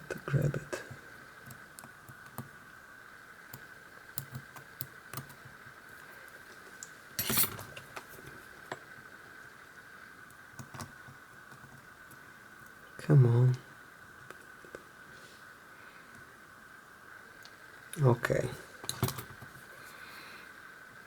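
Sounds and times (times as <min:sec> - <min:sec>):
clicks and taps of lock parts: 0:18.8 - 0:19.5.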